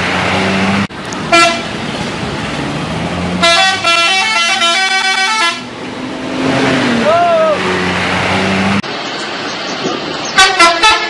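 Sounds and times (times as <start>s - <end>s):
engine and road noise: 0.0s - 11.0s
musical air horn tune: 1.3s - 1.6s, 3.4s - 5.7s, 10.4s - 11.0s.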